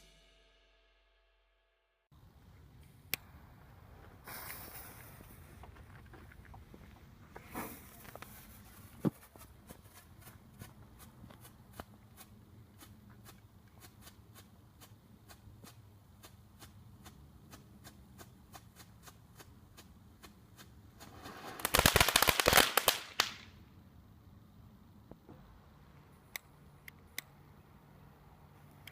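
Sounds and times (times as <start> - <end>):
firework hissing and cracking: 4.1 - 5.7, 7.4 - 10.3, 11.0 - 23.6.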